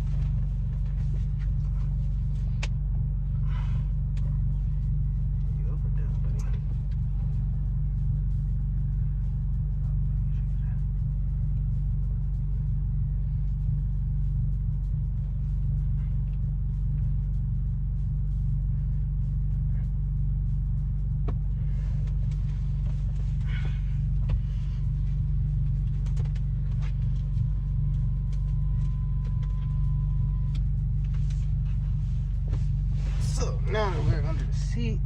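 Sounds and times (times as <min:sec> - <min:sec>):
car engine idling: 0:00.0 - 0:35.0
cable and trim clicks and rustles: 0:25.7 - 0:31.4.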